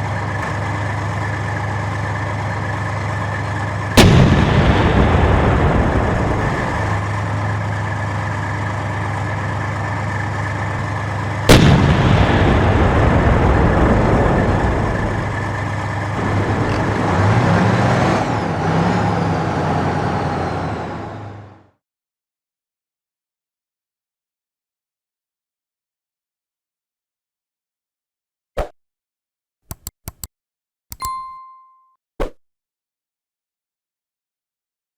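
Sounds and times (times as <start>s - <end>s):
tank engine running: 0.0s - 21.8s
loud cannon shot: 4.0s - 6.8s, 11.5s - 15.5s.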